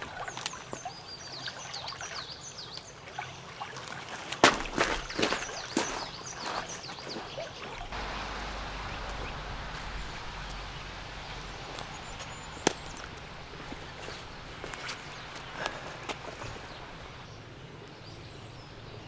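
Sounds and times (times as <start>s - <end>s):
stream flowing: 7.1s - 17.4s
light crackles: 7.8s - 18.0s.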